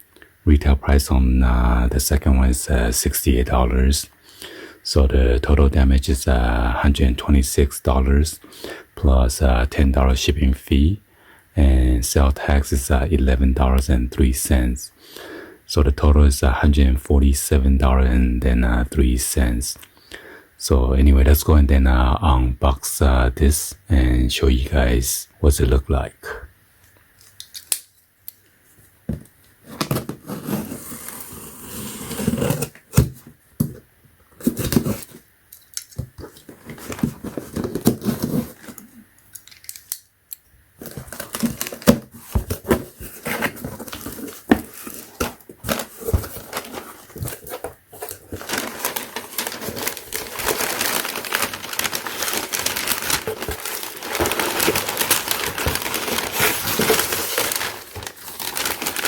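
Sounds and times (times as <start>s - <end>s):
packaging being cut and torn: 48.4s - 59.0s.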